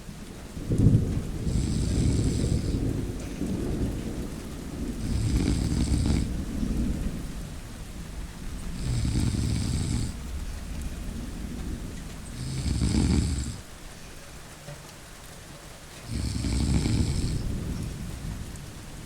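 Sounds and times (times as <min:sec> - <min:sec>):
thunder rumble: 0:00.0 - 0:14.1, 0:16.1 - 0:19.0
steady rain: 0:00.0 - 0:19.0
person snoring: 0:01.5 - 0:02.8, 0:05.0 - 0:06.3, 0:08.8 - 0:10.2, 0:12.3 - 0:13.6, 0:16.1 - 0:17.5.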